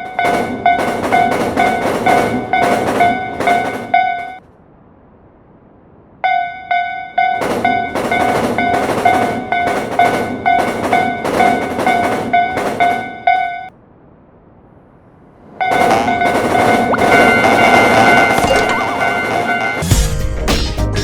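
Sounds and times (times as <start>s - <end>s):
railroad crossing bell ringing: 6.2s - 11.7s, 12.3s - 13.7s, 16.8s - 19.8s.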